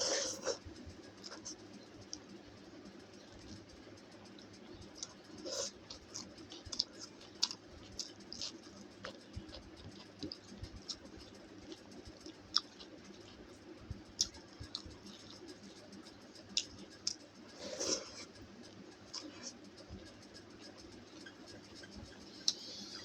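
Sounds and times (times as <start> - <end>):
person chewing with mouth clicks: 4.4 - 15.5, 16.4 - 20.0, 21.2 - 23.0.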